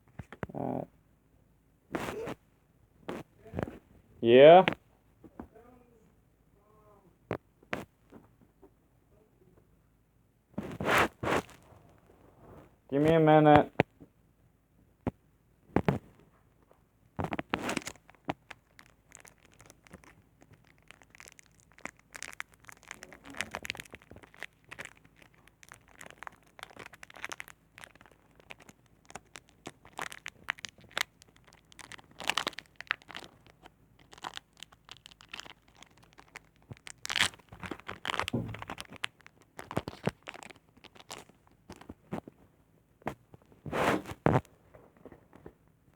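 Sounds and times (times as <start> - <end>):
card packaging crinkling: 17.4 - 42.0.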